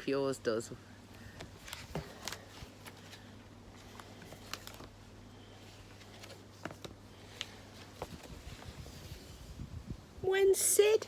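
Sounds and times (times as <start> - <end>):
book pages rustling: 1.1 - 9.5.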